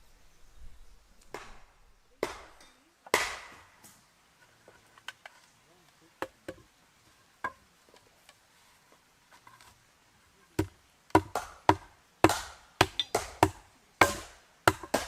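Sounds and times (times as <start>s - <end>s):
tool striking wood: 10.6s - 15.0s.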